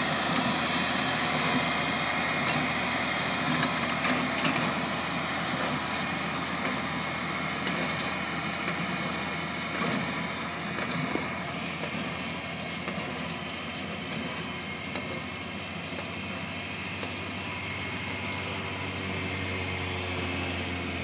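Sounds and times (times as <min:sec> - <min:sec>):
tractor engine: 0:00.0 - 0:21.0
baler mechanical clatter: 0:03.4 - 0:16.2.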